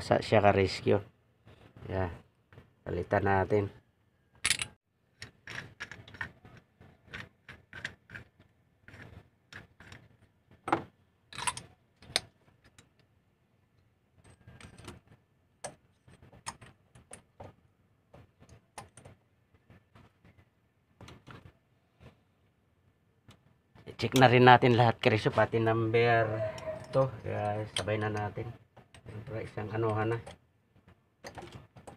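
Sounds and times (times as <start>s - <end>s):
metallic clicks of hand tools: 4.4s - 8.3s, 26.8s - 28.3s.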